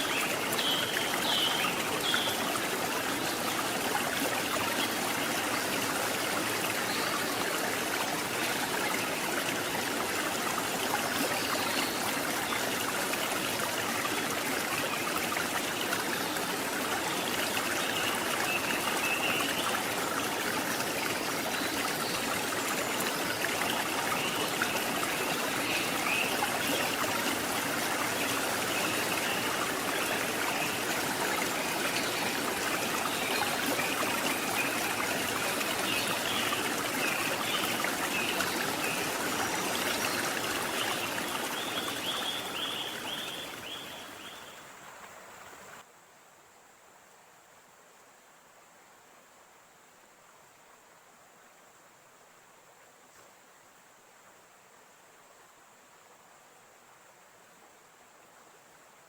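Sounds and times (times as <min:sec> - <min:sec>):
stream water flowing over rocks: 0:00.0 - 0:45.9.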